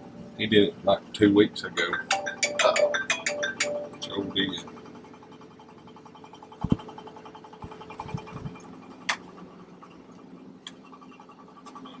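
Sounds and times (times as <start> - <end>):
mechanical hum: 0.0 - 12.0
dull handling thumps: 6.6 - 6.9.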